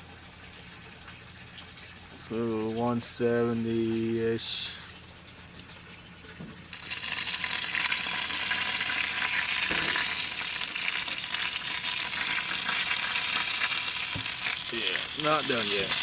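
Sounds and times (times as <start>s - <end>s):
meat sizzling and crackling: 6.7s - 16.0s.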